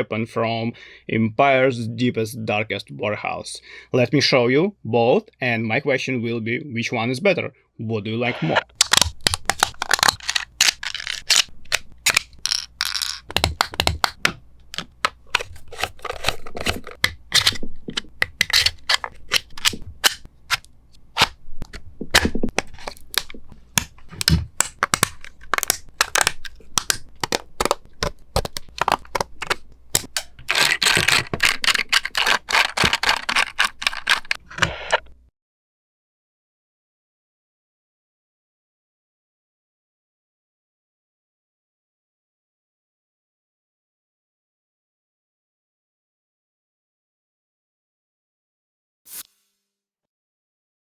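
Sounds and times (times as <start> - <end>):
rattling plastic scrapes: 9.0 - 13.6, 22.3 - 35.1.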